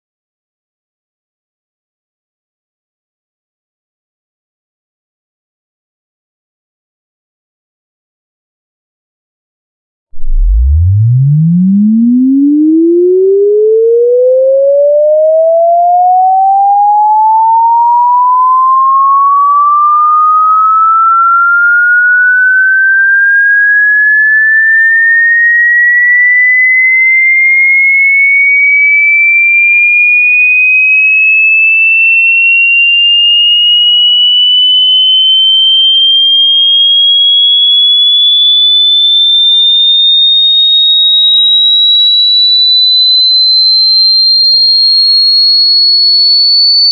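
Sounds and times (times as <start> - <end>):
sine tone sweeping upward: 10.2 - 46.9.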